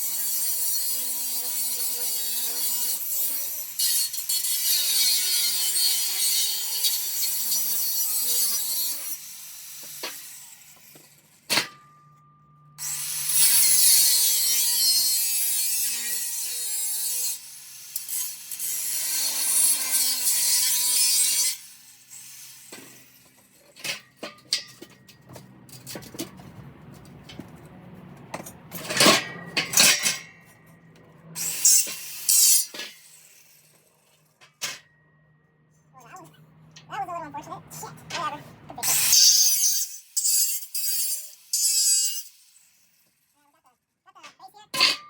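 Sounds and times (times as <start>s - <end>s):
chop saw cutting steel: 0.0s - 12.0s, 12.8s - 26.4s, 28.7s - 35.0s, 38.1s - 43.4s
metal clanks and knocks: 23.7s - 31.1s.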